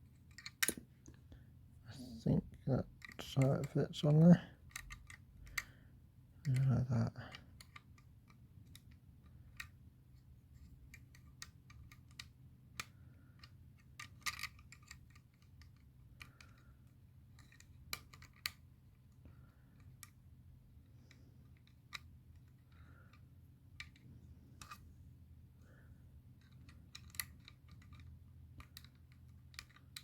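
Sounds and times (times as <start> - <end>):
faint low hum: 0.0 - 30.0
plastic puzzle pieces clicking: 0.2 - 0.8, 4.6 - 5.7, 6.4 - 9.8, 10.6 - 16.8, 17.4 - 18.6, 26.4 - 30.0.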